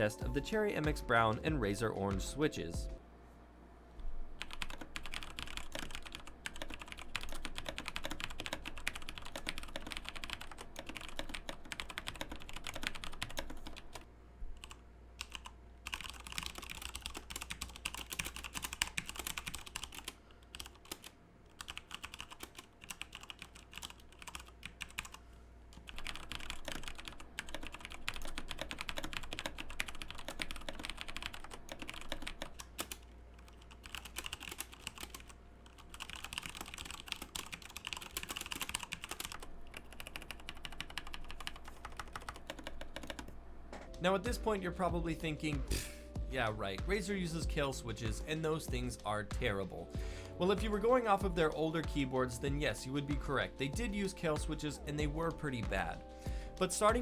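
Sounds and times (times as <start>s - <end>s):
fast typing on mechanical keyboard: 4.4s - 43.4s.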